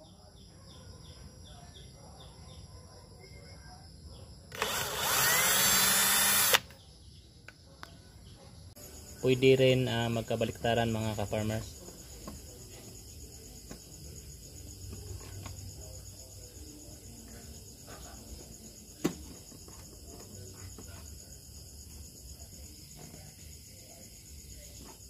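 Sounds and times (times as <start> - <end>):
crickets chirping: 0.0 - 25.0.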